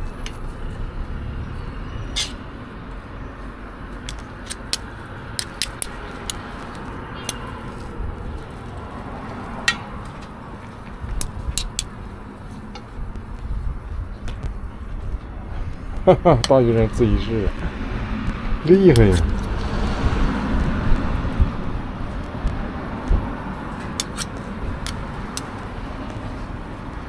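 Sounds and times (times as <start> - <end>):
low street rumble: 0.0 - 27.0
sharp clicks and taps: 4.0 - 7.4.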